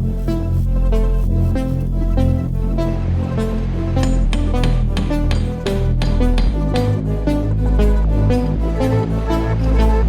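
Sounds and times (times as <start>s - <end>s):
electronic beat with plucked notes: 3.4s - 8.7s.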